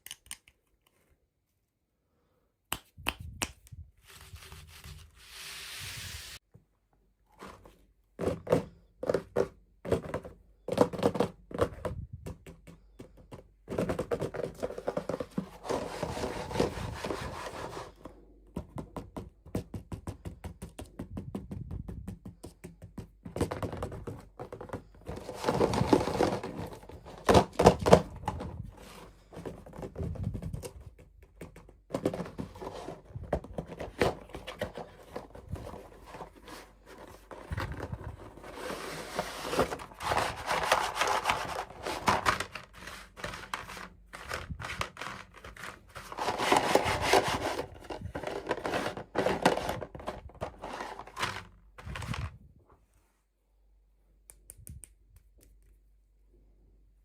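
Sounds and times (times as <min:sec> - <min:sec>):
packaging tapped and crinkled: 0:18.5 - 0:38.6, 0:39.4 - 0:52.4
packaging rustling: 0:24.5 - 0:29.9, 0:31.9 - 0:52.4.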